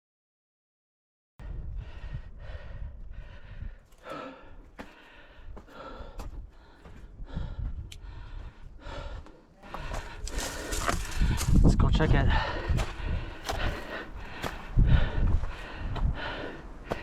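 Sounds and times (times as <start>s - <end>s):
wind rumble on microphone: 1.4s - 3.9s, 6.2s - 9.2s, 9.8s - 17.0s
person breathing hard: 1.4s - 11.6s, 12.2s - 17.0s.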